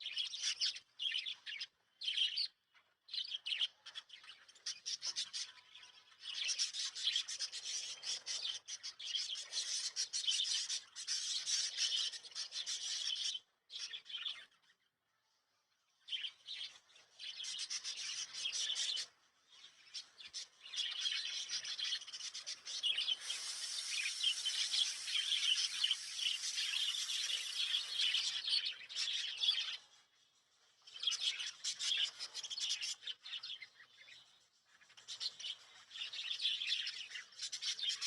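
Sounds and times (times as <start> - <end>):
parrots chattering and chirping: 19.8 - 29.7.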